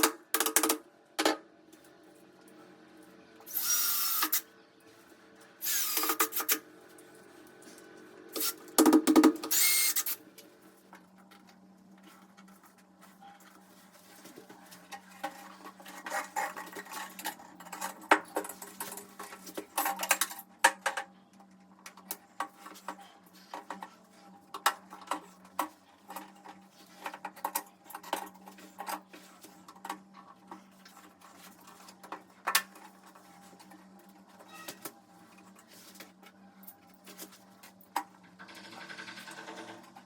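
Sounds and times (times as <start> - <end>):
power tool running: 3.5 - 4.4, 9.4 - 10.2.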